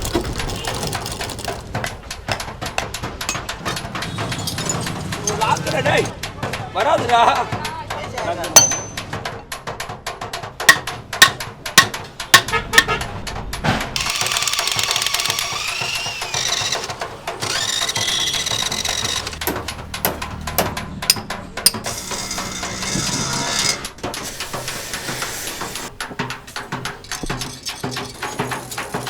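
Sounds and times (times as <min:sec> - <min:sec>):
metal knocks and clanks: 0:00.0 - 0:06.2, 0:08.6 - 0:09.4, 0:10.6 - 0:13.1, 0:14.0 - 0:29.0
high-pitched metal screeching: 0:14.0 - 0:19.6, 0:21.7 - 0:25.9, 0:26.5 - 0:29.0.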